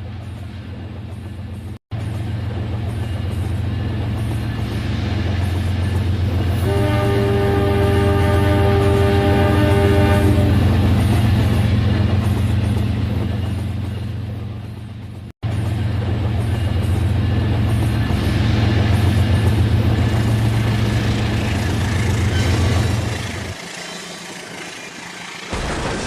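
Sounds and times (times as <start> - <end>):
toy train electronic horn: 6.6 - 10.6.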